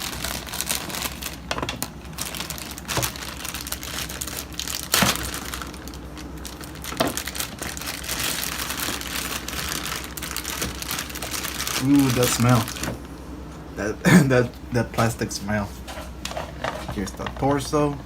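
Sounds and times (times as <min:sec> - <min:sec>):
plastic packaging crinkling: 0:00.0 - 0:13.2.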